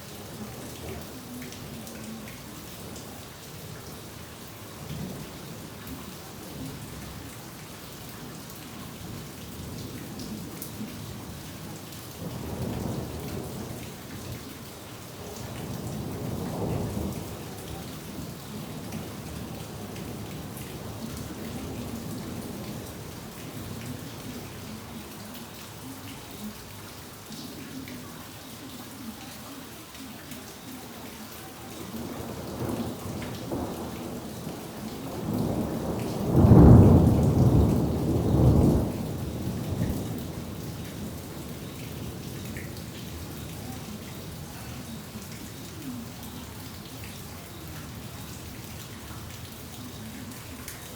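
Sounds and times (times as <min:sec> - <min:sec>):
rain falling: 0:00.0 - 0:50.9
raindrops ticking: 0:00.0 - 0:50.9
thunder rumbling: 0:12.1 - 0:24.9, 0:31.9 - 0:45.3.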